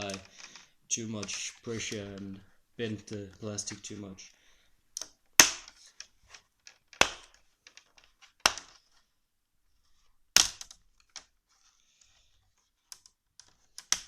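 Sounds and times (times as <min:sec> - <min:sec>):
small plastic clicks: 0:12.8 - 0:14.0.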